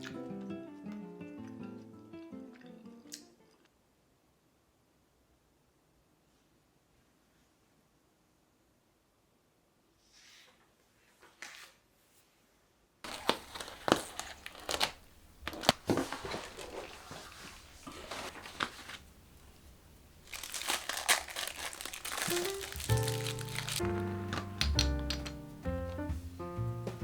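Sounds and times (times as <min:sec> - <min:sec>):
crinkling crackly material: 0:13.0 - 0:26.1
background music: 0:21.4 - 0:27.0.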